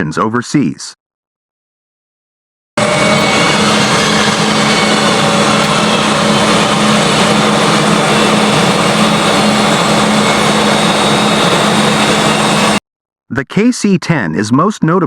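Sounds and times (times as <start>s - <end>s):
jet engines roaring: 2.8s - 12.8s
low hum: 2.8s - 12.8s.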